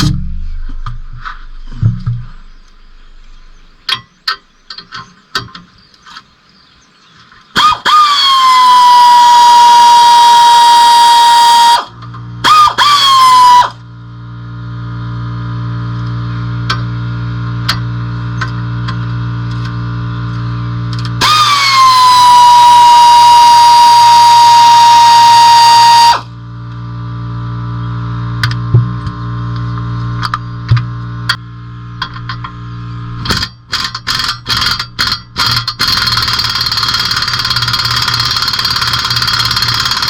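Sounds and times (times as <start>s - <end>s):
low motor hum: 0.0s - 7.2s, 11.8s - 12.5s, 13.1s - 40.0s
power tool high whine: 21.2s - 26.4s
tool clicks and rattles: 33.2s - 40.0s.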